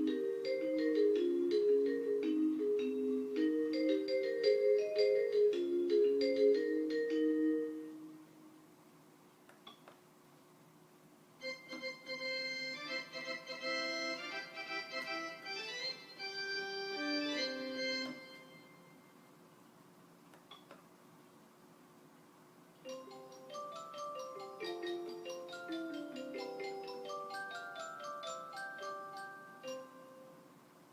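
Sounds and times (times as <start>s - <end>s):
toy keyboard playing a melody: 0.0s - 8.1s, 11.4s - 18.8s, 22.8s - 30.5s.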